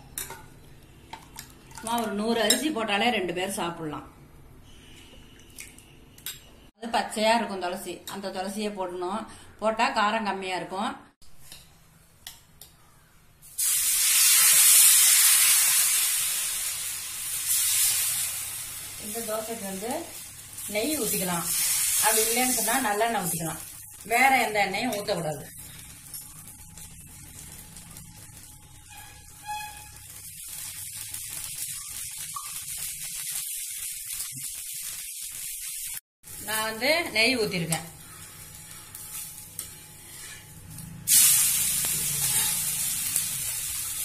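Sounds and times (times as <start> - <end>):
batter sizzling on hot pan: 13.4 - 44.0.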